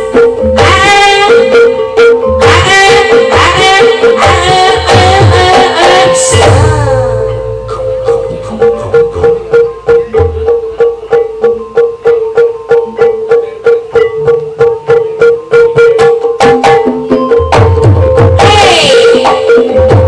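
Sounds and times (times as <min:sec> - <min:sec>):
steady held tone: 0:00.0 - 0:17.6
fast plucked notes: 0:00.0 - 0:20.0.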